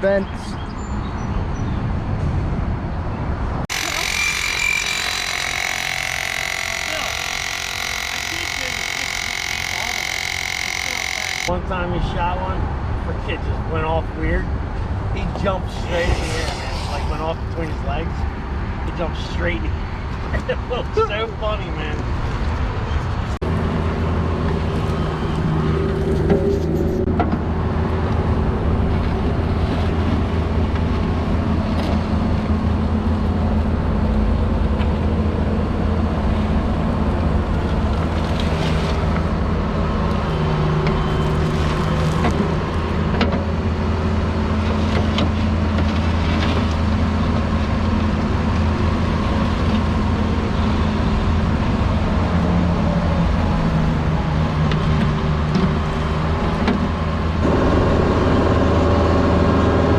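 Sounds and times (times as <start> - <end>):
engine running: 3.7 - 11.5, 23.4 - 59.9.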